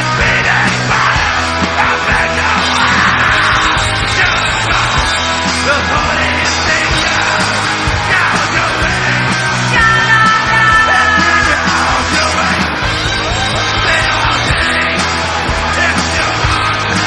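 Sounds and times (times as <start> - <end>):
loud rock music: 0.0 - 17.0
person shouting vocals: 9.7 - 12.4.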